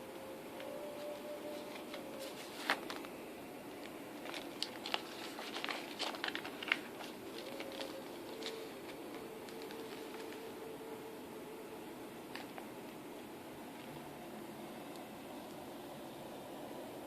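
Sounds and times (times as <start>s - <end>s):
packaging crinkling: 1.6s - 10.5s.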